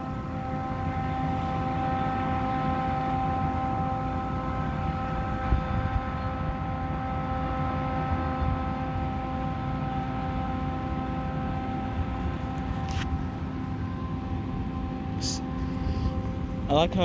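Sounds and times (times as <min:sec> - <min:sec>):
machine fan whine: 0:00.0 - 0:17.0.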